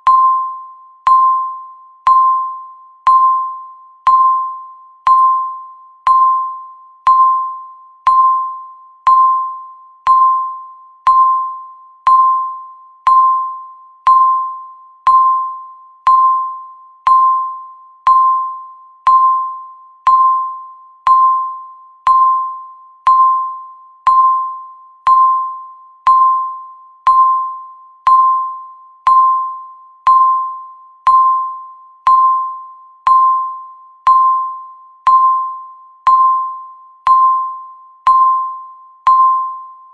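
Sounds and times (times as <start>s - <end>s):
electronic timer beeps: 0.0s - 39.9s.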